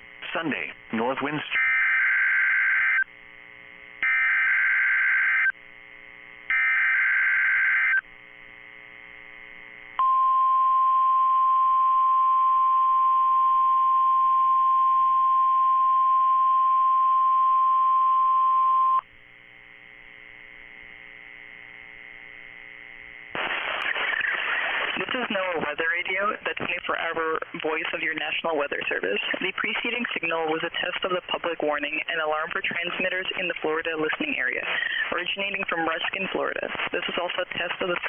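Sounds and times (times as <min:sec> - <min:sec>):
faint radio hum: 0:00.1 - 0:01.7, 0:19.6 - 0:38.0
steady warning alarm tone: 0:04.0 - 0:05.5, 0:06.5 - 0:08.0.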